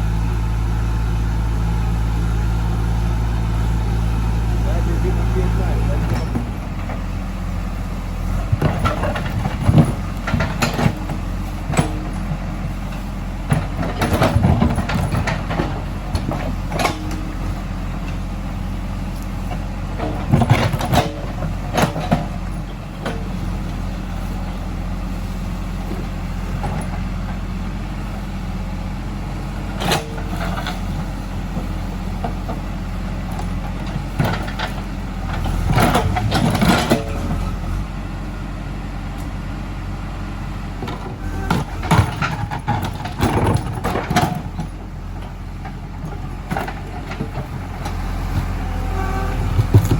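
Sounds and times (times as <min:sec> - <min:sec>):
diesel engine running: 0:00.0 - 0:49.9
machine knocks and clanks: 0:40.9 - 0:44.8, 0:49.4 - 0:49.9.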